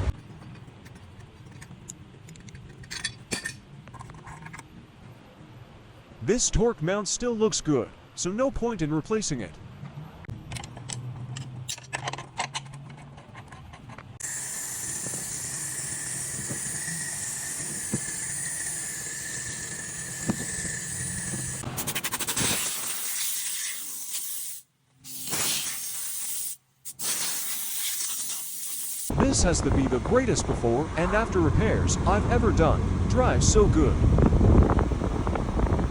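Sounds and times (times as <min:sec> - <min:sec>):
steady hiss with high tone: 0:14.2 - 0:21.6
low hum: 0:29.1 - 0:35.9.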